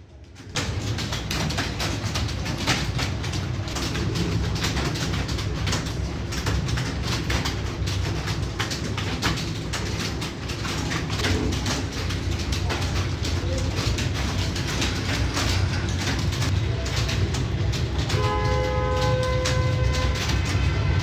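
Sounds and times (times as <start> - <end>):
keyboard typing: 0.1 - 21.0.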